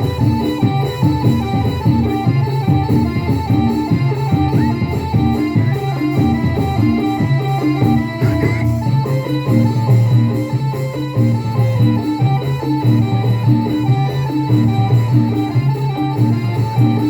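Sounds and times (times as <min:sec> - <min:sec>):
plucked guitar: 0:00.0 - 0:17.0
repeating bass line: 0:04.5 - 0:08.8.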